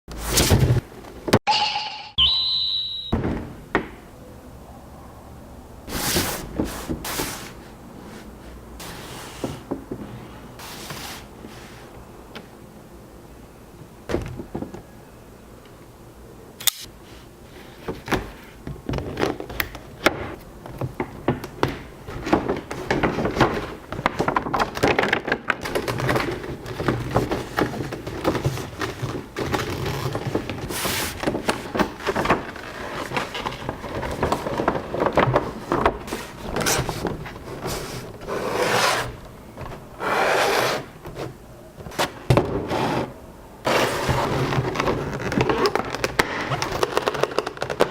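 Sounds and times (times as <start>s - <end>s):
cardboard and plastic crinkling: 17.8s - 39.9s, 43.7s - 47.9s.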